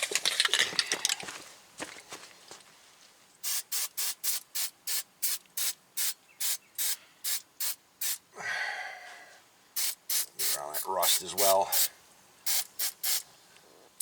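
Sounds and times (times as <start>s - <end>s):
aerosol can spraying: 3.4s - 8.2s, 9.8s - 11.9s, 12.5s - 13.2s.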